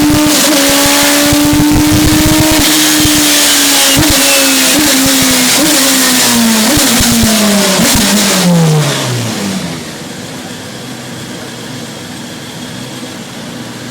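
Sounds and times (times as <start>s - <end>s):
engine pops on overrun: 0.0s - 10.1s
car engine revs falling: 0.0s - 10.3s.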